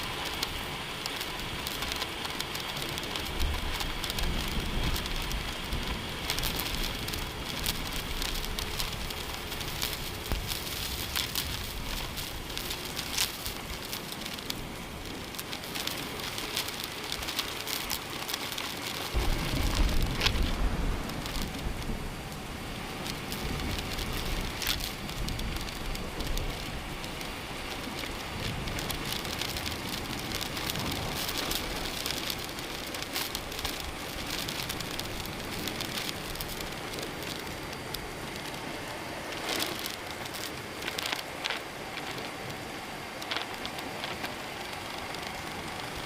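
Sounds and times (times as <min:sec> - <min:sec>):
heavy rain falling: 0:00.0 - 0:46.0.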